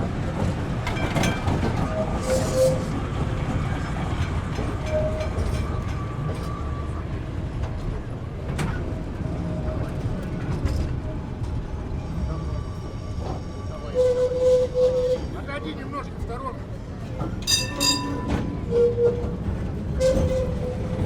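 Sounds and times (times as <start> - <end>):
wheels clacking over rail joints: 0.0 - 6.7, 17.0 - 21.0
tram rolling on rails: 0.0 - 21.0.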